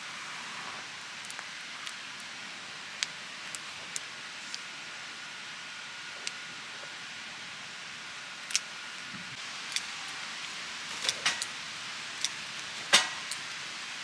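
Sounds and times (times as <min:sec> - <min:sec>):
sharp clicks and knocks: 0:12.2 - 0:13.6.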